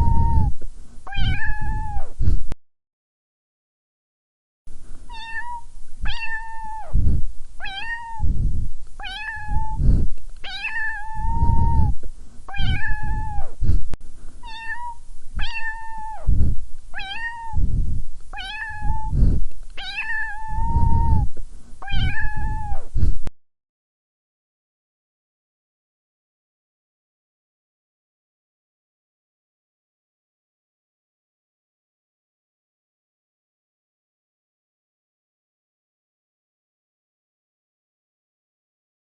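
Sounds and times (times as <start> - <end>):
cat meowing: 0.0 - 0.5, 1.1 - 2.1, 5.1 - 7.0, 7.6 - 8.3, 9.0 - 9.8, 10.4 - 13.6, 14.4 - 16.3, 17.0 - 17.6, 18.4 - 19.2, 19.8 - 22.9
cat low rumble: 0.0 - 2.6, 4.8 - 23.3.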